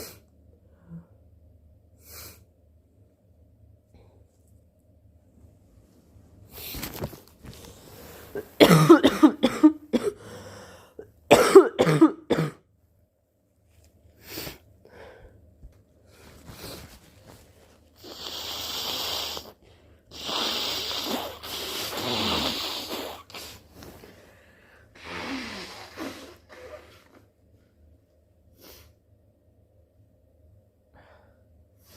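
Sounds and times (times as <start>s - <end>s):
person coughing: 8.4s - 10.4s, 11.3s - 12.6s
person blowing nose: 18.0s - 24.1s, 25.0s - 27.2s.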